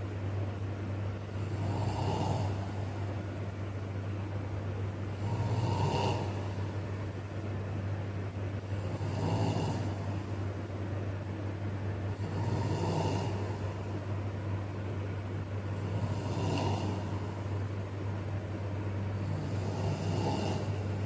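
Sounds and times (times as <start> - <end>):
steady low hum: 0.0 - 21.0
person snoring: 1.3 - 2.9, 5.2 - 6.7, 8.8 - 10.0, 12.2 - 13.7, 15.8 - 17.4, 19.2 - 21.0.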